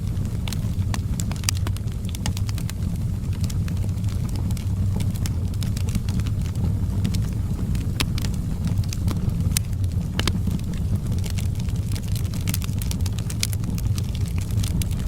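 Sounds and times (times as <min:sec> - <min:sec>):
burning logs crackling and popping: 0:00.0 - 0:15.0
fire flames rumbling: 0:00.0 - 0:15.0.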